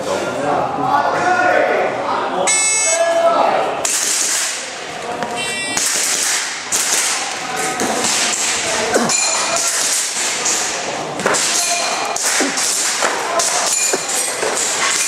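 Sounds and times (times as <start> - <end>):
shot timer beep: 2.5 - 3.0
airsoft pistol shots: 3.8 - 4.7, 5.8 - 7.2
pellets hitting targets: 3.8 - 15.0.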